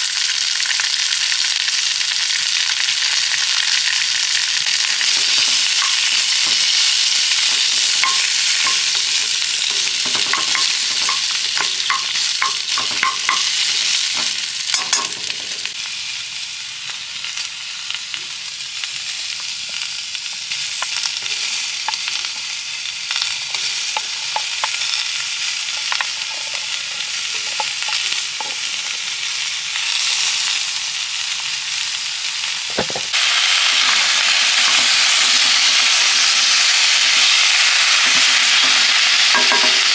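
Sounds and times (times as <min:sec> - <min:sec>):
food sizzling in a pan: 0:00.0 - 0:39.9
utensil tapping while stirring: 0:08.0 - 0:13.6.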